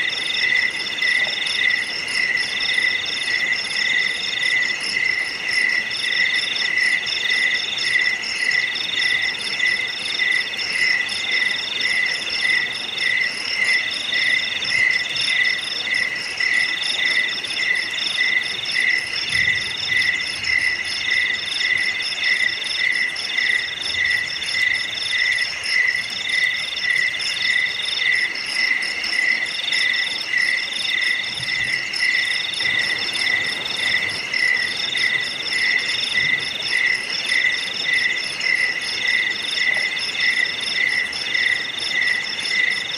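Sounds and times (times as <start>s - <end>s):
low chirping insect: 0.0s - 42.9s.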